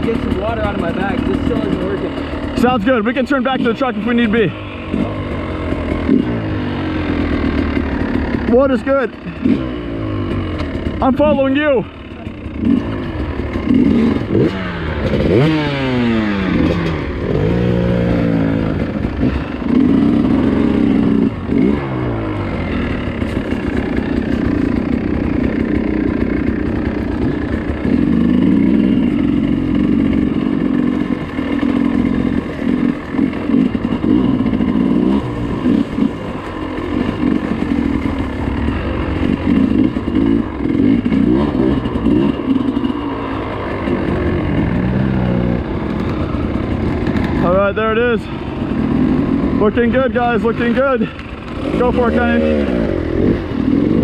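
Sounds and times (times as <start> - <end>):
dirt bike engine revving: 0.0 - 54.0
clatter: 7.2 - 11.0, 12.1 - 47.8.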